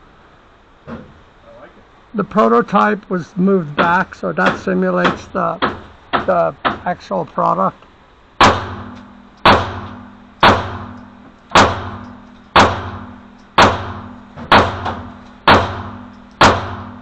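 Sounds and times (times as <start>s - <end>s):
pistol shots with echo: 8.4s - 17.0s.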